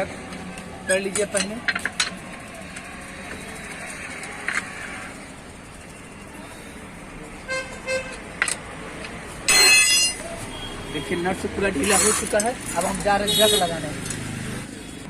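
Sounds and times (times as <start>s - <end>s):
traffic background: 0.0s - 15.0s
vehicle horn beeps: 10.5s - 11.3s.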